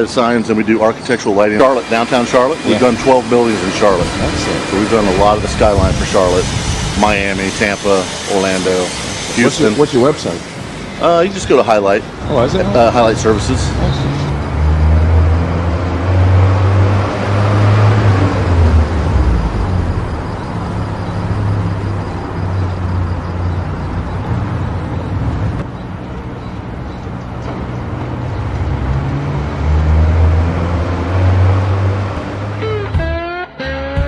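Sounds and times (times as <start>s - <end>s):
traffic noise: 0.0s - 33.3s
low engine rumble: 10.7s - 33.1s.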